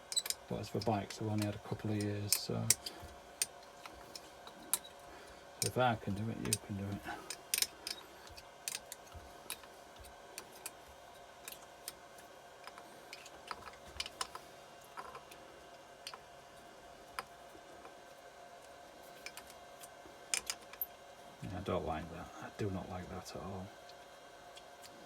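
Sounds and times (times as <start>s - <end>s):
faint steady hum: 0.0s - 25.0s
hand tools clicking and tapping: 0.1s - 4.9s, 6.4s - 10.8s, 20.3s - 20.9s.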